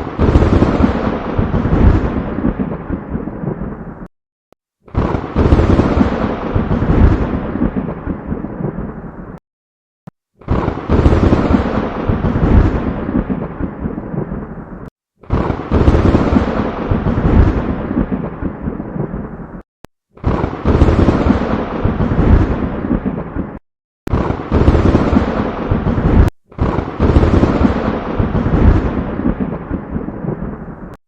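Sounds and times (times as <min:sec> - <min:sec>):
thunderclaps rumbling: 0:00.0 - 0:04.1, 0:04.9 - 0:09.4, 0:10.4 - 0:19.6, 0:20.2 - 0:31.0.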